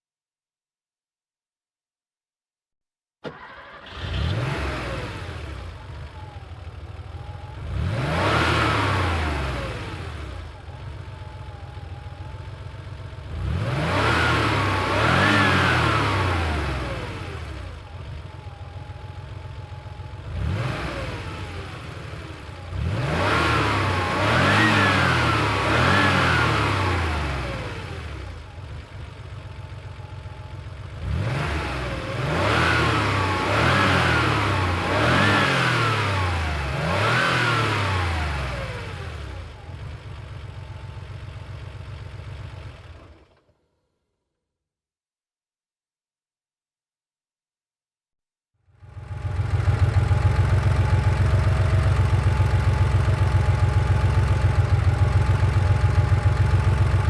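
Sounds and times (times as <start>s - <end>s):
car engine revving: 3.2s - 29.8s, 30.8s - 39.9s, 48.9s - 57.0s.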